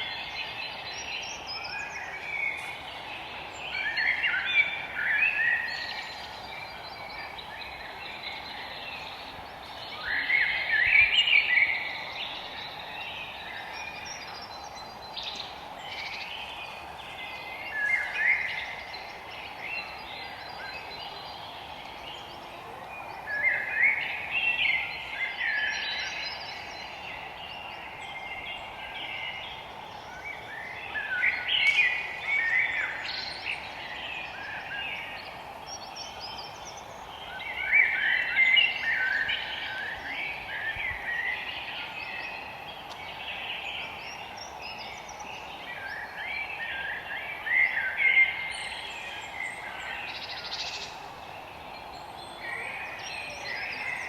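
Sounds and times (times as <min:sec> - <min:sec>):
background hiss: 0:00.0 - 0:54.0
songbirds twittering: 0:00.0 - 0:54.0.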